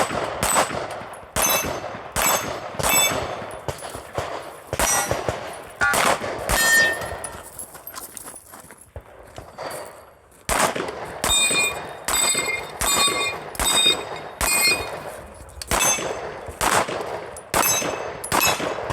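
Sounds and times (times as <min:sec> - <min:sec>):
gunshots: 0:00.0 - 0:07.4, 0:10.5 - 0:18.9
steel targets ringing: 0:01.4 - 0:03.7, 0:04.8 - 0:07.6, 0:11.2 - 0:16.4, 0:17.3 - 0:18.9.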